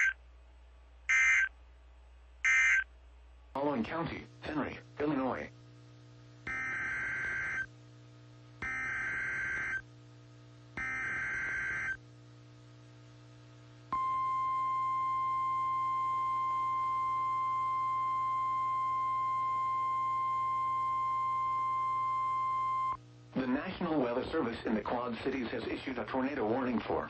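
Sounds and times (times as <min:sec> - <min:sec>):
buzzy data bursts: 0:01.1 - 0:01.5, 0:02.4 - 0:02.8, 0:06.5 - 0:07.7, 0:08.6 - 0:09.8, 0:10.8 - 0:12.0
steady warning alarm tone: 0:01.1 - 0:01.5, 0:02.4 - 0:02.9, 0:06.5 - 0:07.7, 0:08.6 - 0:09.8, 0:10.8 - 0:12.0, 0:13.9 - 0:23.0.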